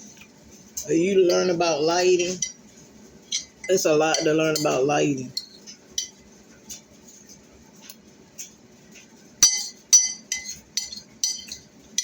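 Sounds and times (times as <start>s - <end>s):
utensil clinking on ceramic plate: 0.8s - 2.7s, 3.3s - 6.2s, 9.4s - 12.0s.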